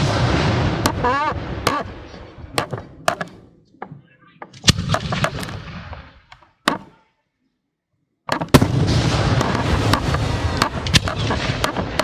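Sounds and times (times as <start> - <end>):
firework booms: 0.0 - 3.5, 8.4 - 12.0
firework crackling: 8.6 - 12.0.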